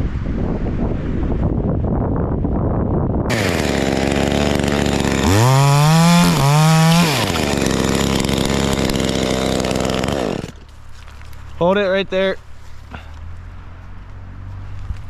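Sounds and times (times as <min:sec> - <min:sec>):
chainsaw idling and revving: 0:03.3 - 0:10.7.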